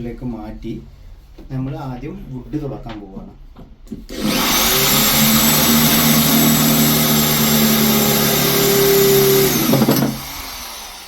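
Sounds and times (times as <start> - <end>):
drill boring through wood: 4.1 - 11.0.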